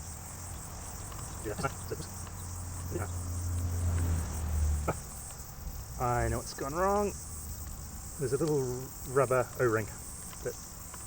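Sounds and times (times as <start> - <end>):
insects chirring: 0.0 - 11.0
faint handling clicks: 7.5 - 11.0.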